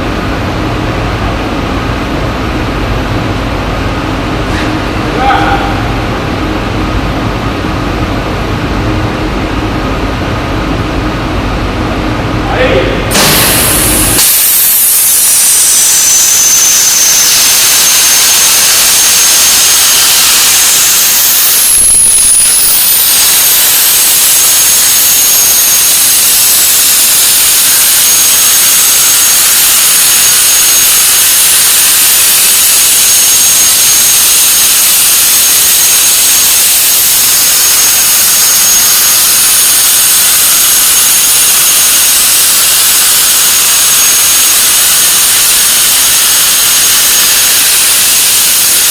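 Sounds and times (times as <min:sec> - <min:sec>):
plasma torch cutting steel: 0:13.1 - 0:48.9.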